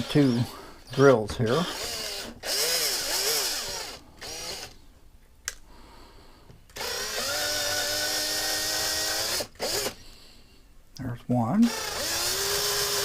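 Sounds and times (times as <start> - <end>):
power drill drilling metal: 0.0 - 4.7, 6.8 - 10.0, 11.7 - 13.0
click: 5.4 - 5.6.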